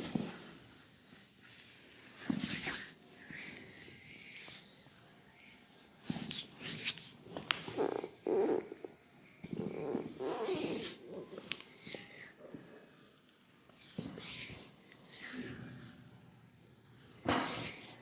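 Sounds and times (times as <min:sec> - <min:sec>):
hands rubbing oiled skin: 0:06.2 - 0:08.9.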